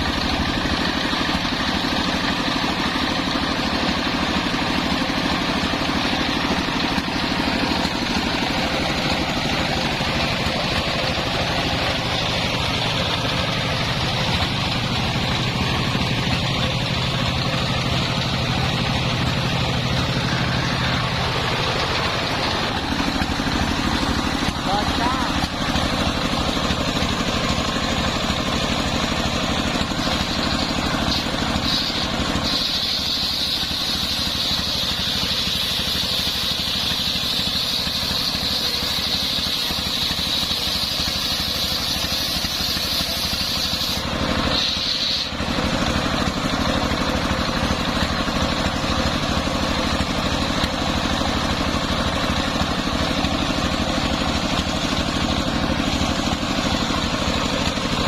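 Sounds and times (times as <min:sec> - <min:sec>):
sawmill engine running: 0:00.0 - 0:58.0
high whine: 0:03.7 - 0:34.7.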